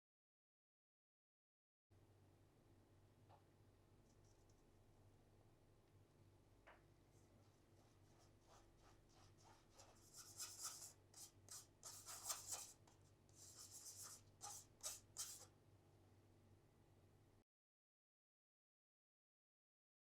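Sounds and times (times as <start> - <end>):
faint low room hum: 2.0 - 17.4
batter scraping in a bowl: 7.6 - 12.8, 13.4 - 15.5.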